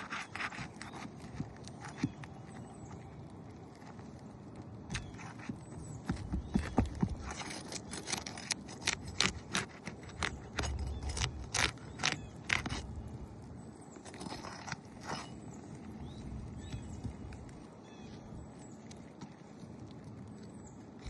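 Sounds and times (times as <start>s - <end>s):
sharp clicks and knocks: 4.9s - 13.0s.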